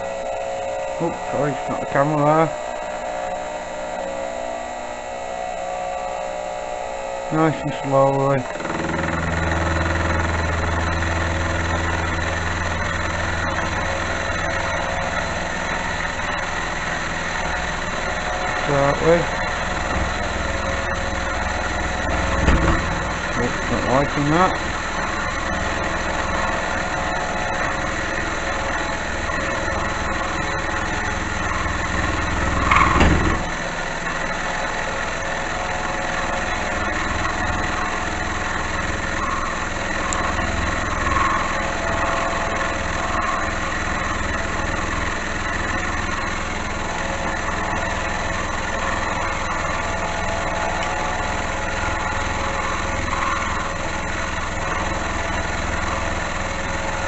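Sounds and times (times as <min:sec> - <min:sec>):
milling machine cutting: 0:07.3 - 0:57.0
loud clunk: 0:19.6 - 0:23.8, 0:30.9 - 0:33.6.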